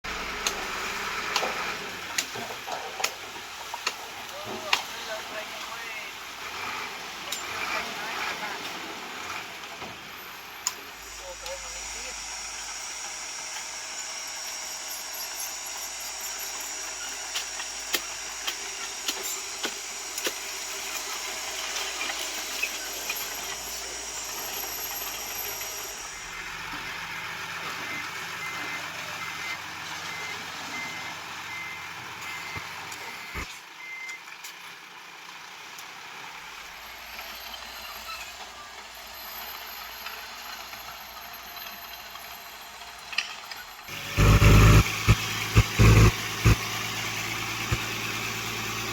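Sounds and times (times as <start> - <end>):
heavy construction machinery: 0.0 - 48.9
reversing alarm beeping: 27.6 - 34.2, 44.0 - 48.8.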